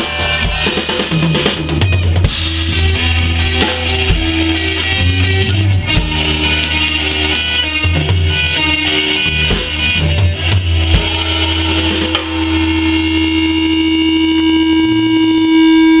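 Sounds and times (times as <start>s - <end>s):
drum hits: 0.0s - 7.2s, 9.5s - 13.5s
ringing guitar and bass chord: 0.0s - 16.0s
rock band playing: 0.0s - 16.0s.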